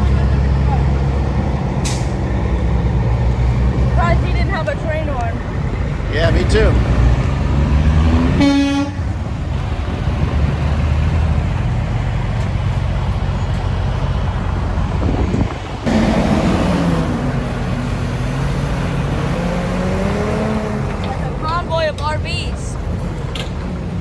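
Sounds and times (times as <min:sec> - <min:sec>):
diesel truck engines passing: 0:00.0 - 0:24.0
truck air horn blast: 0:08.2 - 0:09.2.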